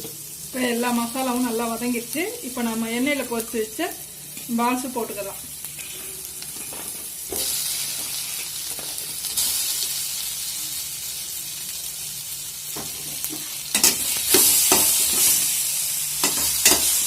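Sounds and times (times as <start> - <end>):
spices sizzling in hot oil: 0.0 - 17.0
spoon scraping pan while stirring: 5.8 - 9.0.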